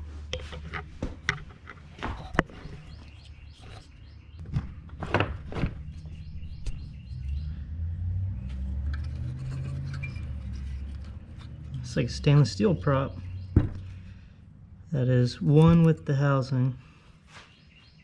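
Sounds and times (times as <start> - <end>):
low steady rumble: 0.0 - 17.1
bird chirps: 2.5 - 4.4, 5.8 - 7.6, 12.7 - 14.2, 17.3 - 18.0.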